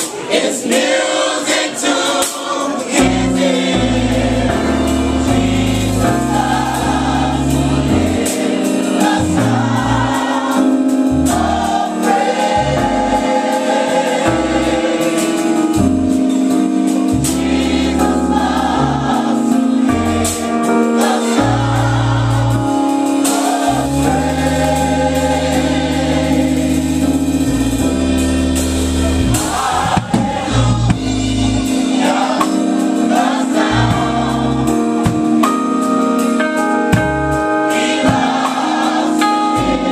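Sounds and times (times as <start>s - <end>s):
gospel choir singing: 0.0s - 39.9s
band with bass and drums: 3.0s - 39.9s.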